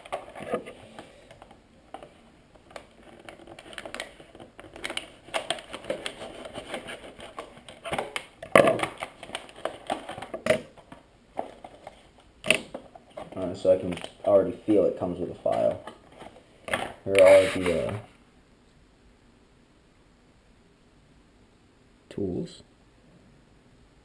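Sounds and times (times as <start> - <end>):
packaging rustling: 0.0 - 14.6, 15.3 - 18.0.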